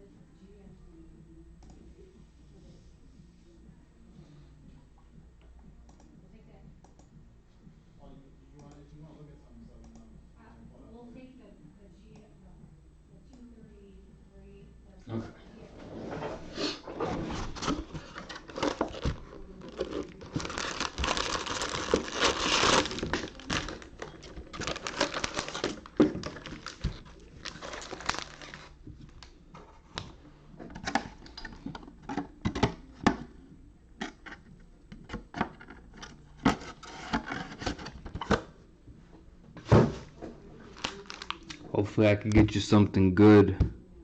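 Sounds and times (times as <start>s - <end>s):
plastic wrapping crinkling and tearing: 17.3s - 29.2s, 40.7s - 41.6s.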